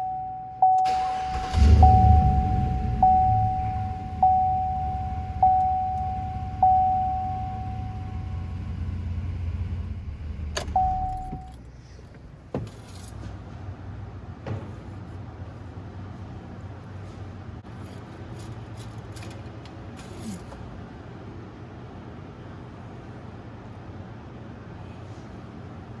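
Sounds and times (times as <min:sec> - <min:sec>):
engine rumbling: 0:00.8 - 0:23.2
cabin warning chime dinging: 0:01.7 - 0:08.5, 0:10.7 - 0:11.6.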